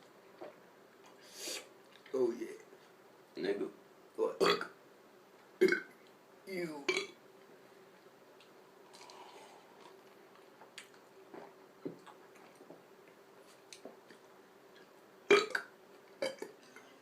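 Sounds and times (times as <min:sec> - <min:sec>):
faint steady hum: 0:00.0 - 0:17.0
person burping: 0:04.4 - 0:04.7, 0:05.6 - 0:05.9, 0:15.3 - 0:16.8.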